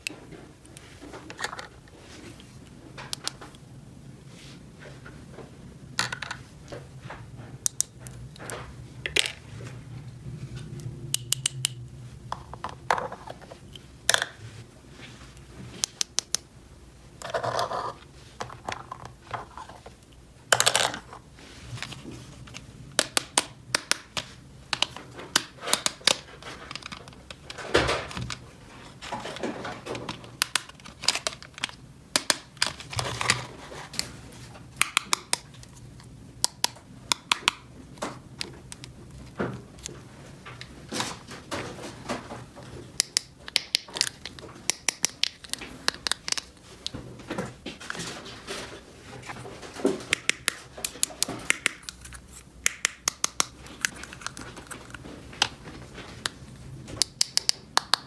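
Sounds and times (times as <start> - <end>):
plastic toy pieces clicking: 14.1 - 14.4, 23.0 - 27.5, 30.2 - 33.4, 34.8 - 35.7, 43.0 - 46.5, 50.1 - 55.5, 57.0 - 58.0
plastic pieces rustling and scraping: 24.7 - 34.7, 37.9 - 52.6, 53.5 - 56.8.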